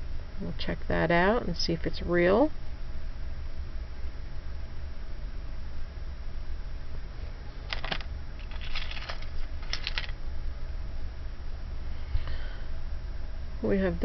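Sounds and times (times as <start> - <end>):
low hum: 0.0 - 14.0
metal jewelry clinking: 7.7 - 10.1.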